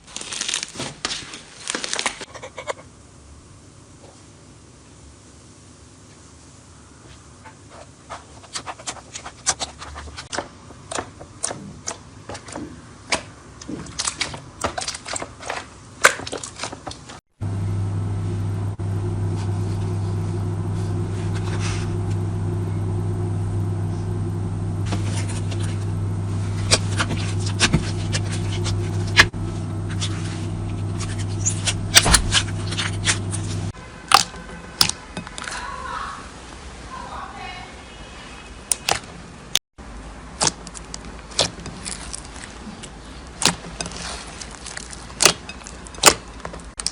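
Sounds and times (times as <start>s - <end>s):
low hum: 17.4s - 33.8s.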